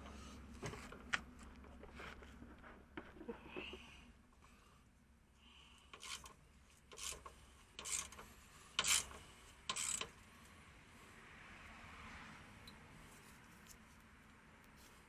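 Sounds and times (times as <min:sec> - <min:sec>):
rasping scrapes on metal: 0:07.0 - 0:08.2.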